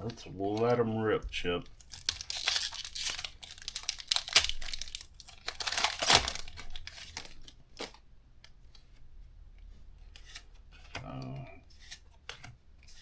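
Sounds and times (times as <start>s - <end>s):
wrappers rustling: 0.0s - 8.0s
foil packs being torn open: 1.7s - 8.0s.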